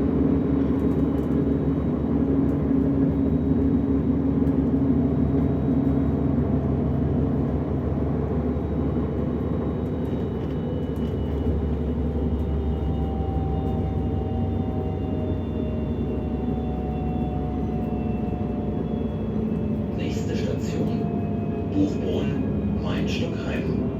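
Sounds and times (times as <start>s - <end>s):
train cabin rumble: 19.4s - 23.9s.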